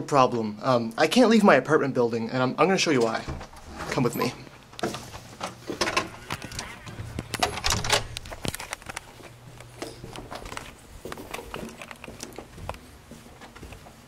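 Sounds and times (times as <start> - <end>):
footsteps: 2.9 - 14.0
rustling handling noise: 3.0 - 14.0.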